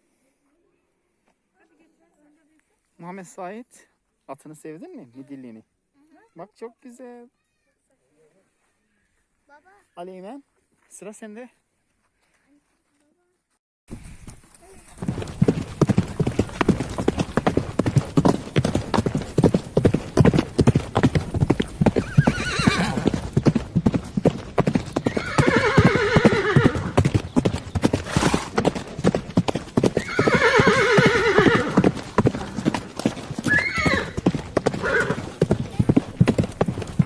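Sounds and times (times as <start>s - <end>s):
horse hooves clip-clopping: 13.9s - 37.0s
horse neighing: 21.9s - 23.2s, 25.0s - 27.0s, 30.0s - 32.6s, 33.4s - 35.4s.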